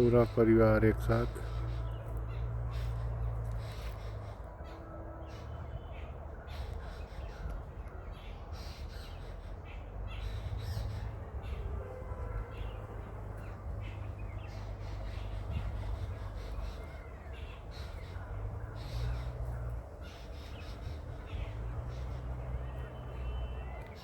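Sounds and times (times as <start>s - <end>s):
birds harsh calls: 0.0s - 24.0s.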